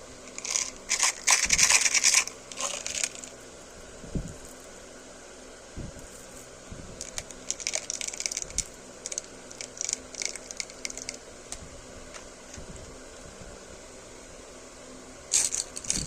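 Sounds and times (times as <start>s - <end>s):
plastic wrappers crinkling: 0.3s - 3.4s, 7.0s - 11.2s.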